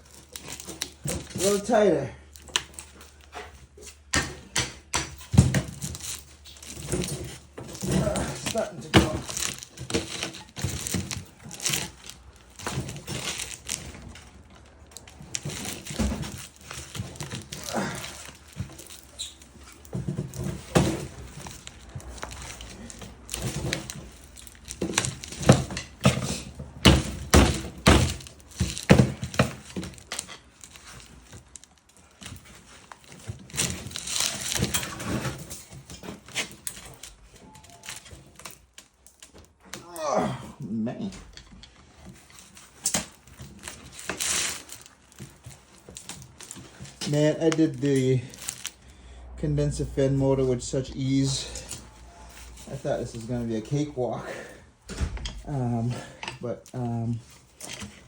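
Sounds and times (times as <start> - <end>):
screwdriver clinking and scraping metal: 0.0 - 39.5.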